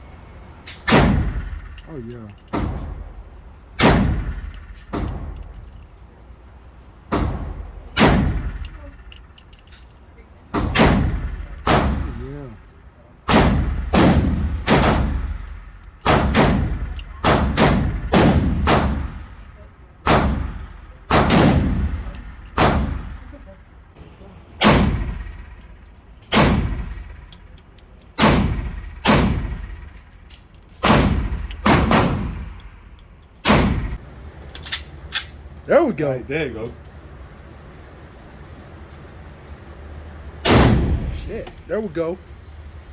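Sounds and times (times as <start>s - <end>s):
gunshots with echo: 3.8s - 5.4s, 10.7s - 12.4s, 13.3s - 19.4s, 20.1s - 23.2s, 24.6s - 25.6s, 26.3s - 27.2s, 28.2s - 29.9s, 30.8s - 32.6s, 33.4s - 34.0s, 40.5s - 41.3s.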